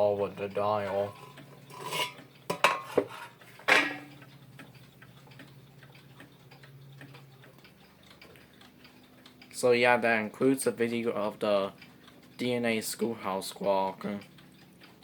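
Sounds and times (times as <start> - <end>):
faint clock ticking: 0.0 - 15.0
knocks and clatters of handling: 0.8 - 4.2.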